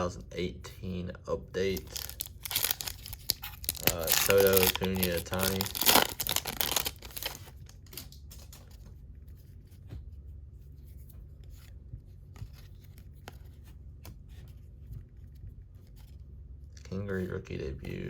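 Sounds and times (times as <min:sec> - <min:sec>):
wrapper tearing open: 0:01.7 - 0:08.6.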